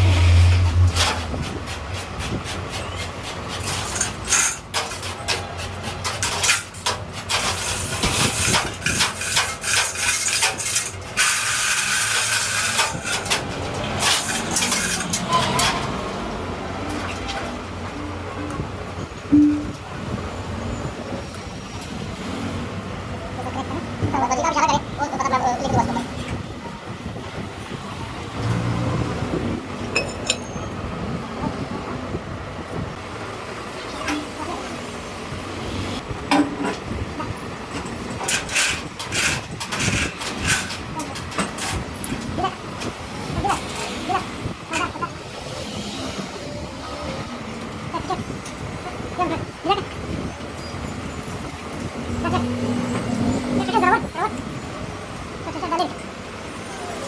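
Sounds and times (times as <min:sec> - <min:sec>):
workshop background noise: 0:00.0 - 0:57.0
metal knocks and clanks: 0:29.8 - 0:30.8.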